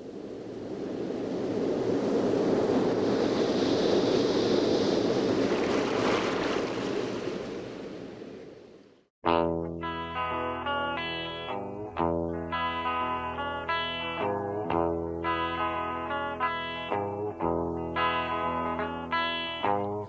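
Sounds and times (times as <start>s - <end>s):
guitar music: 9.2s - 20.0s.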